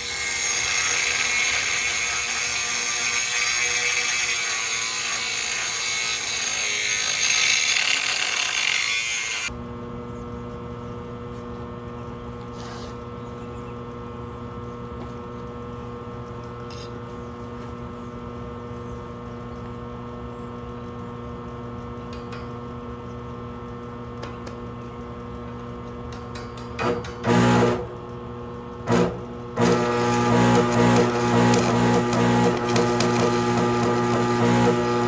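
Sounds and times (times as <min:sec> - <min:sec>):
stick welder humming: 0:00.0 - 0:09.5, 0:26.8 - 0:28.1, 0:28.7 - 0:35.0
cooling fan running: 0:27.3 - 0:35.0
welding arc bursts: 0:28.9 - 0:35.0.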